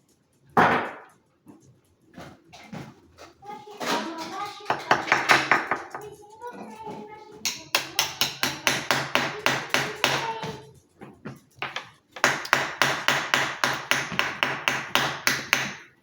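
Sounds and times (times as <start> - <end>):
fast even taps: 7.4 - 10.7.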